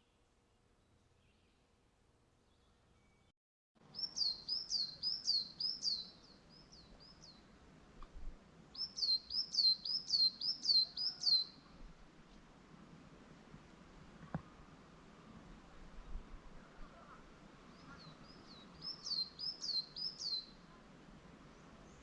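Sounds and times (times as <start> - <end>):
songbird singing high notes: 4.0 - 6.7.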